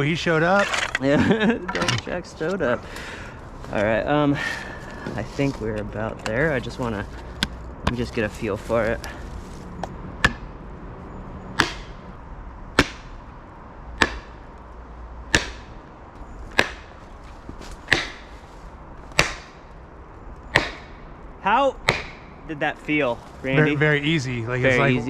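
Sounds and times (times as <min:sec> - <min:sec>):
blows driving wedges into tree: 0:11.6 - 0:12.0, 0:12.7 - 0:13.3, 0:14.0 - 0:14.6, 0:15.2 - 0:15.8, 0:16.5 - 0:18.5, 0:19.1 - 0:19.8, 0:20.5 - 0:21.1, 0:21.8 - 0:22.4.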